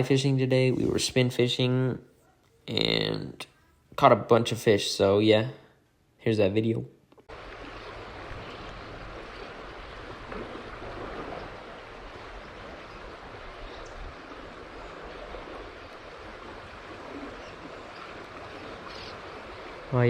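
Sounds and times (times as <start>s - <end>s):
river water rushing: 7.3s - 20.0s.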